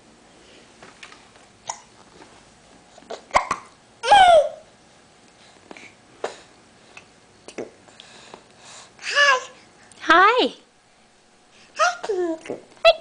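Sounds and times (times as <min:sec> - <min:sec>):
child hiccuping: 0:03.1 - 0:04.6.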